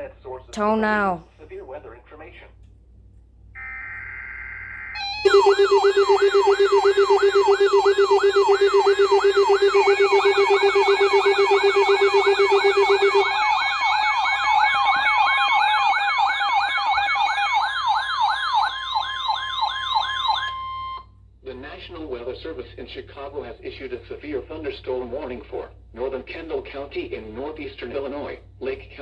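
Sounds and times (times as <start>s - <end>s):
electronic siren wailing: 3.6s - 21.1s
steady tone: 4.9s - 14.3s.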